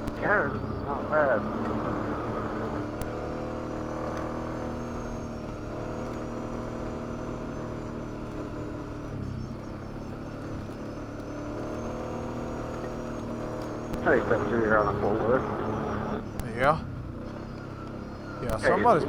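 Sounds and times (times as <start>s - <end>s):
atv engine running: 0.0s - 19.0s.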